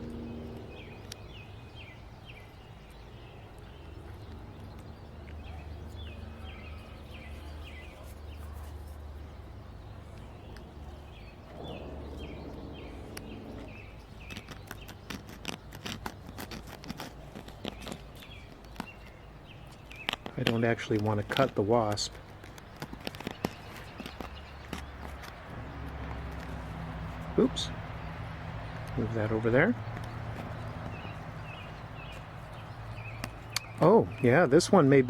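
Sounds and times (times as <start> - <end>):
steady low hum: 0.0 - 2.3, 9.2 - 15.0, 25.5 - 33.6
bird singing high notes: 11.0 - 14.7
blade clicking and scraping: 12.6 - 19.2.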